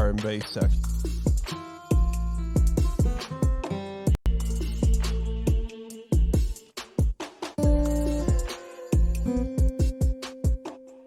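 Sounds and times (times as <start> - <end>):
ticking hi-hats: 0.0 - 3.7, 4.3 - 11.0
deep electronic kick drums: 0.0 - 10.6
held bass note: 7.6 - 9.6.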